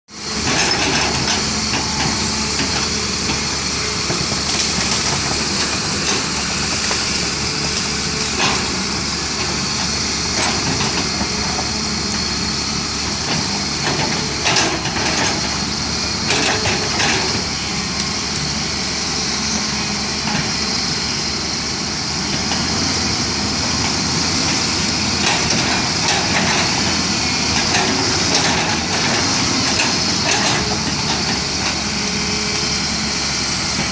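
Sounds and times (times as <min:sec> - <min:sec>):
diesel engine running under load: 0:00.1 - 0:33.9.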